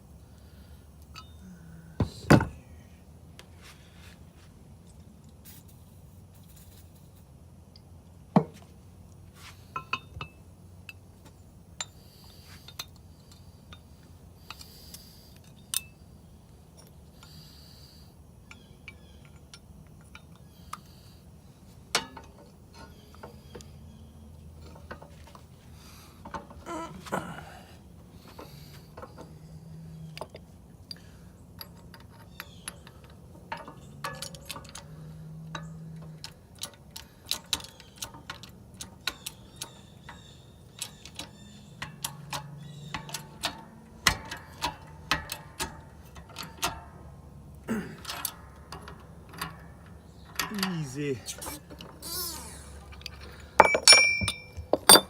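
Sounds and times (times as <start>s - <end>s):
metallic clicks and knocks of press: 31.6s - 47.0s.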